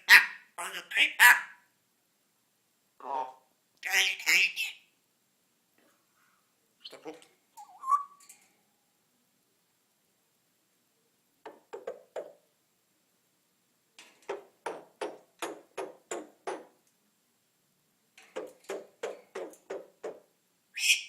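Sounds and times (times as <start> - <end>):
parrot knocking clicks: 14.0 - 16.7, 18.2 - 20.3.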